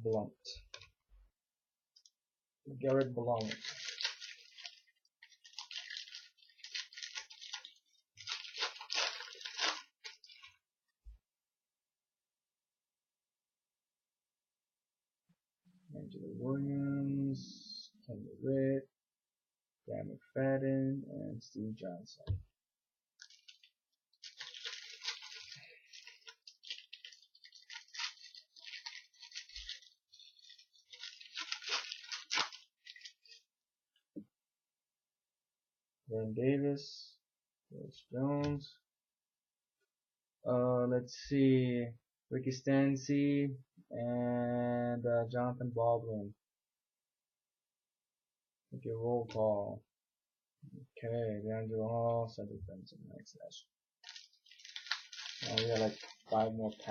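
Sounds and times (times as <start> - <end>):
foil wrapper crinkling and tearing: 3.0 - 10.6, 23.2 - 33.5, 54.0 - 56.9
cards rustling: 3.3 - 10.6, 23.2 - 33.4, 54.0 - 56.9.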